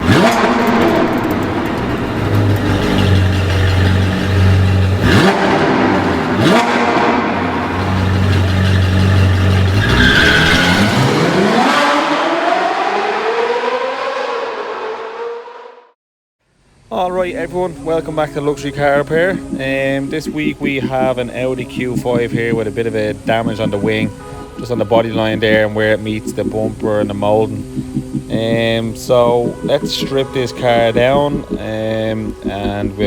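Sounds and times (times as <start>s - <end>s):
car engine revving: 0.0s - 15.9s, 18.0s - 33.0s
sudden sharp hits: 26.3s - 33.0s.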